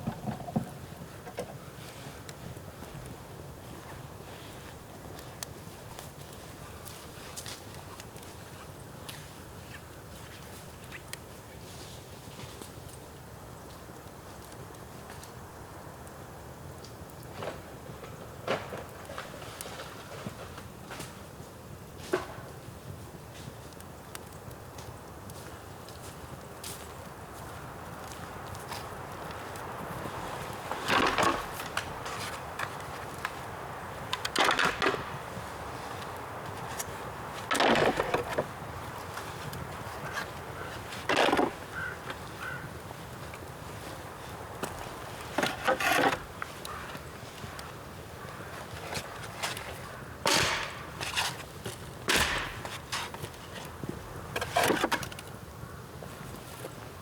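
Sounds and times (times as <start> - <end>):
crunching rustles of dry material: 0.0 - 15.4, 17.2 - 57.0
bamboo fire crackling and popping: 0.0 - 57.0
dry bamboo cracking sharply: 34.1 - 35.2, 36.0 - 40.3, 50.2 - 53.4.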